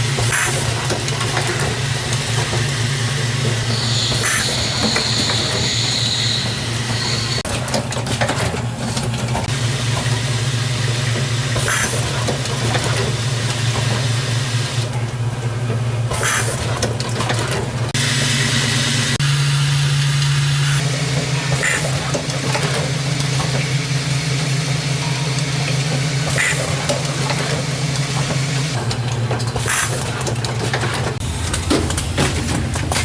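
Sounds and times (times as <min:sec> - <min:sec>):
machine humming and hissing: 0:00.0 - 0:07.5, 0:17.9 - 0:28.8, 0:29.5 - 0:33.0.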